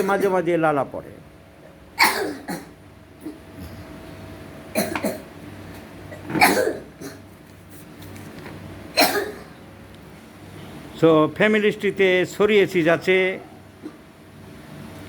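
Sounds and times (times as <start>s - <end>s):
boy coughing: 2.0s - 3.8s, 4.7s - 5.3s, 6.1s - 7.3s, 9.0s - 9.5s.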